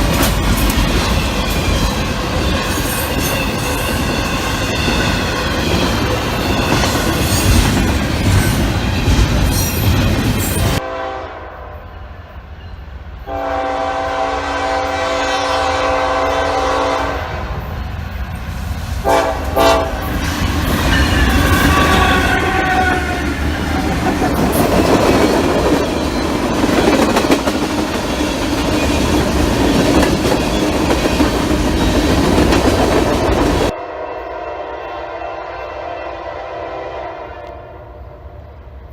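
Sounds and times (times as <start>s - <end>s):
wheels clacking over rail joints: 0.0s - 10.8s, 20.0s - 33.7s
train passing with heavy rumble: 0.0s - 38.9s
locomotive horn blasts: 10.8s - 11.9s, 13.2s - 17.5s, 19.0s - 20.1s, 21.0s - 23.3s, 33.8s - 38.2s.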